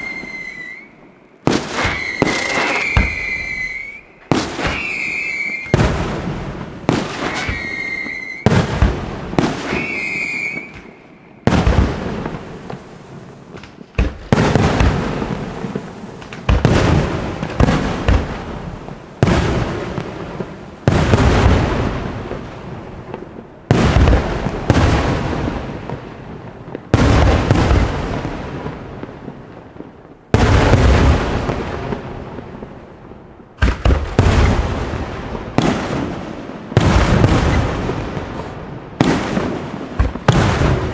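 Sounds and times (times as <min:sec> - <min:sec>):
short high whistle: 0:00.0 - 0:01.0, 0:01.9 - 0:04.2, 0:04.8 - 0:05.8, 0:07.4 - 0:08.4, 0:09.8 - 0:11.0
firework rumble and crackle: 0:00.0 - 0:40.9
firework shell bursts: 0:38.3 - 0:38.6.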